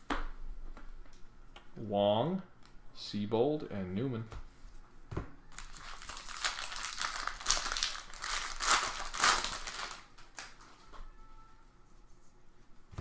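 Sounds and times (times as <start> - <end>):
foil wrapper crinkling: 5.5 - 10.8.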